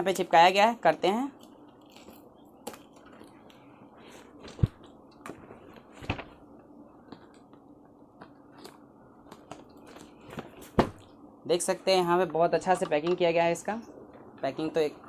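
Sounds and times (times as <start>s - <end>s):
packaging rustling and crinkling: 1.4s - 11.2s.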